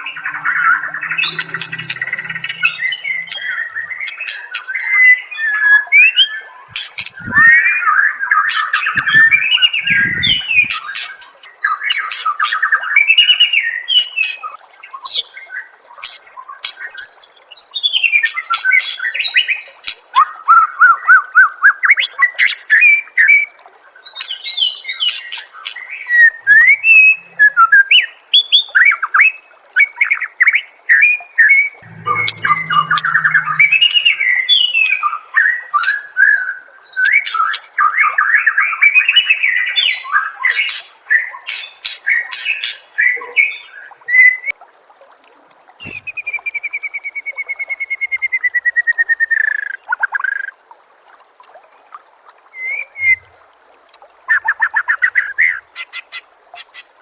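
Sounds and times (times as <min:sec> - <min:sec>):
songbird singing whistled trills: 0:45.8 - 0:50.5.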